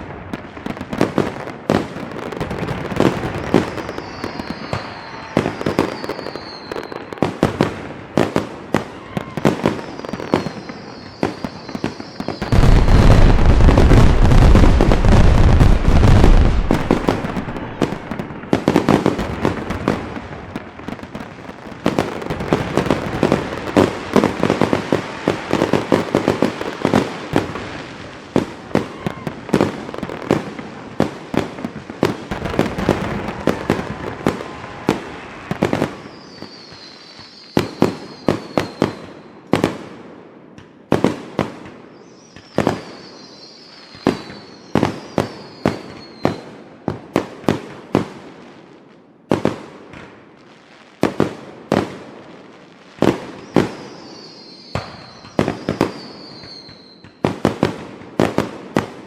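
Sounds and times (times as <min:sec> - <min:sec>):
fireworks bangs and crackle: 0:00.0 - 0:59.0
firework whistle falling in pitch: 0:03.3 - 0:07.2, 0:08.9 - 0:13.5, 0:32.5 - 0:39.2, 0:42.0 - 0:46.4, 0:53.5 - 0:57.2.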